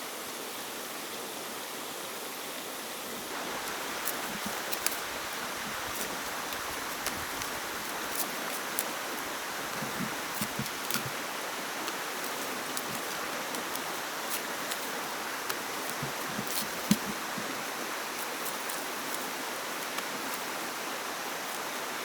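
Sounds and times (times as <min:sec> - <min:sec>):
rushing water: 0:00.2 - 0:22.0
light clicks and taps: 0:03.6 - 0:11.2, 0:11.8 - 0:19.2.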